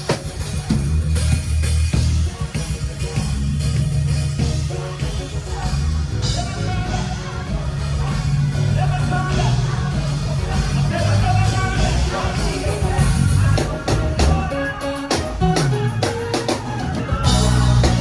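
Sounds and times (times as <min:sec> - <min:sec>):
drums: 0:00.0 - 0:18.0
guitar: 0:00.0 - 0:18.0
heavy bass line: 0:00.0 - 0:18.0
person singing: 0:05.0 - 0:18.0.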